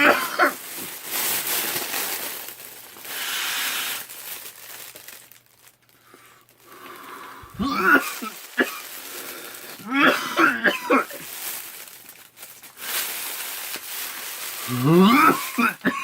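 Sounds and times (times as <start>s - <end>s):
plastic bag crinkling: 0.0s - 16.0s
airy inhaling hiss: 3.1s - 4.1s, 6.0s - 9.8s.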